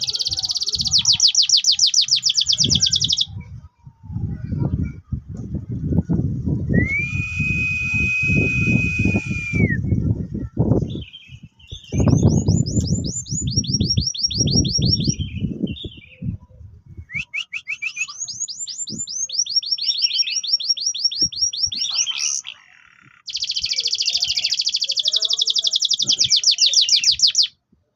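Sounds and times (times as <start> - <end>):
canary singing: 0.0 - 3.4, 10.9 - 16.2, 17.2 - 27.6.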